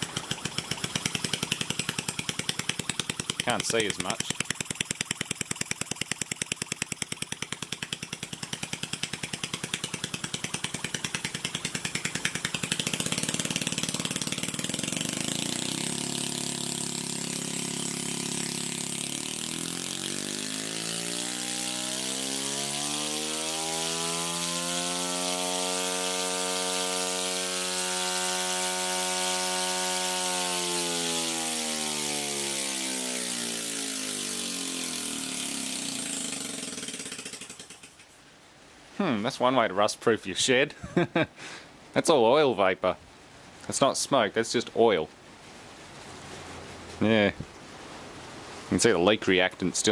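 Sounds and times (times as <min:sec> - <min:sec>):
compressor running: 0:00.0 - 0:38.1.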